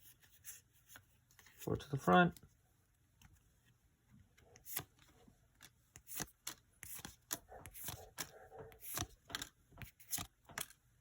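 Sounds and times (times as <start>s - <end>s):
cards snapping and swishing: 5.9s - 10.7s.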